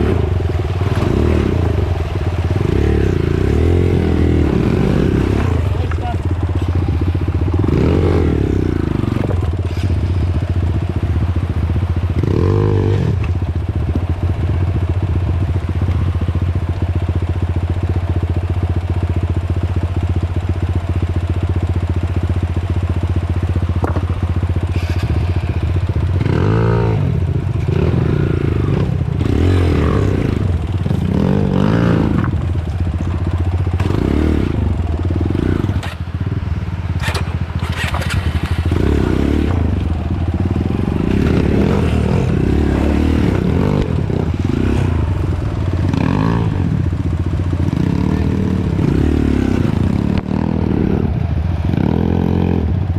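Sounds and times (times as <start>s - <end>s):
dirt bike engine revving: 0.0s - 11.4s, 12.0s - 13.4s, 21.7s - 52.9s.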